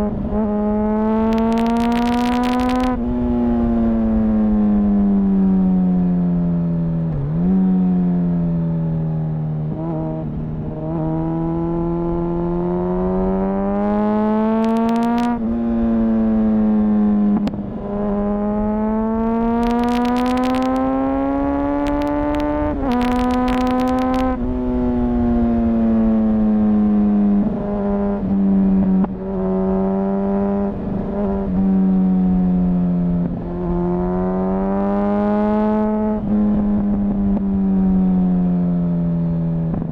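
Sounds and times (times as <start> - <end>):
motorcycle engine revving: 0.0 - 39.9
exhaust crackle: 1.2 - 3.2, 14.5 - 15.4, 19.4 - 20.9, 21.7 - 24.6.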